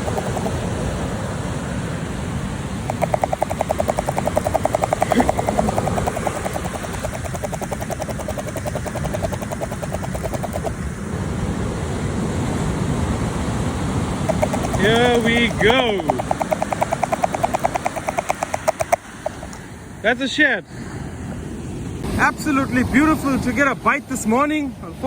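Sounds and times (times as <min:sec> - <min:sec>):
fishing reel clicking: 0:00.0 - 0:00.6, 0:02.9 - 0:10.7, 0:14.3 - 0:19.6
wind: 0:00.0 - 0:25.0.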